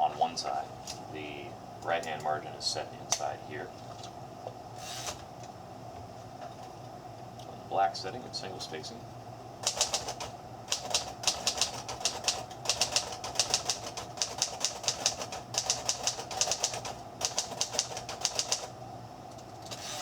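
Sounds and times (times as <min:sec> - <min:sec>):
typewriter keys striking: 0:09.6 - 0:18.7.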